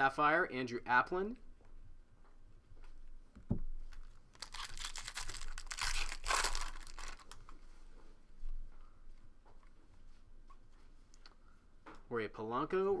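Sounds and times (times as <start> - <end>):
foil wrapper crinkling and tearing: 3.9 - 7.5.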